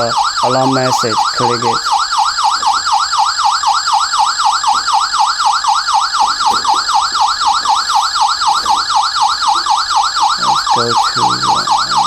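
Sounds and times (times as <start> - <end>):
burglar alarm siren warbling: 0.0 - 12.0.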